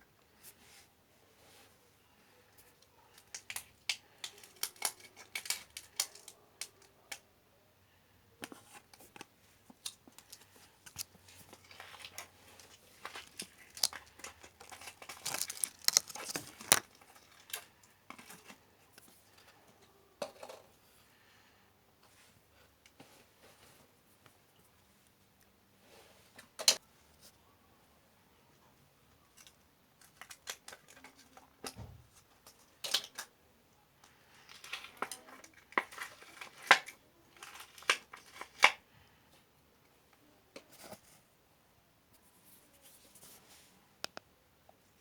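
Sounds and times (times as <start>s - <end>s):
slime kneaded by hand: 13.0s - 16.9s.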